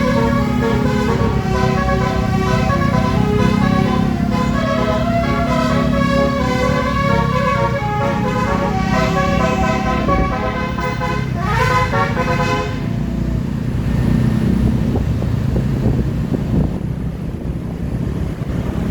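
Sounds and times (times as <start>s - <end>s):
multi-tone air horn tune: 0.0s - 13.0s
vehicle road rumble: 0.0s - 18.9s.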